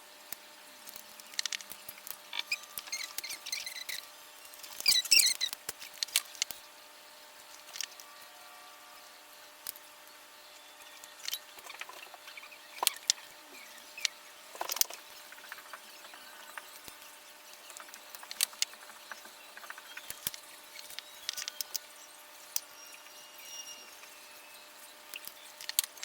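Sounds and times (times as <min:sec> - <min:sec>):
faint steady hum: 0:00.0 - 0:26.0
small objects clicking and tapping: 0:00.3 - 0:06.6, 0:07.5 - 0:08.1, 0:11.0 - 0:13.3, 0:14.0 - 0:21.9, 0:25.1 - 0:26.0.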